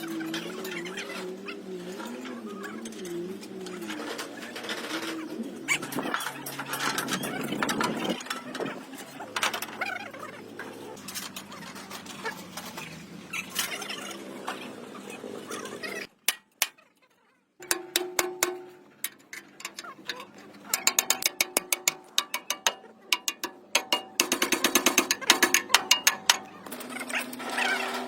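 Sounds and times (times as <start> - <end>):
rapid mechanical clicks on metal: 17.6 - 28.0.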